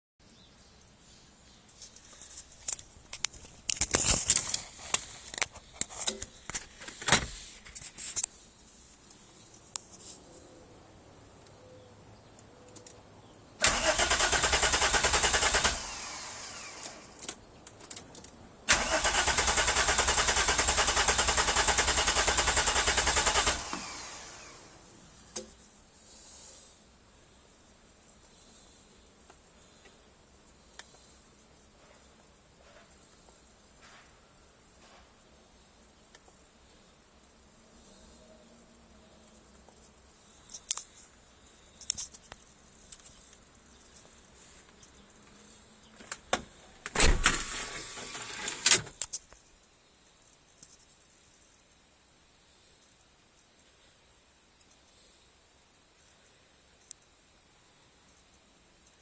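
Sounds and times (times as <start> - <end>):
engine cranking on starter: 13.6 - 17.4, 18.7 - 24.8, 46.9 - 49.0.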